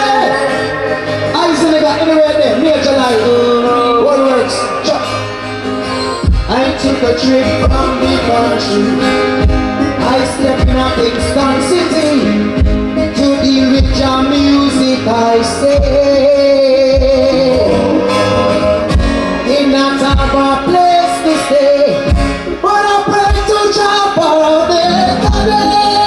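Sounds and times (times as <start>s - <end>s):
backing music with heavy bass: 0.0s - 26.0s
person singing live: 0.0s - 26.0s.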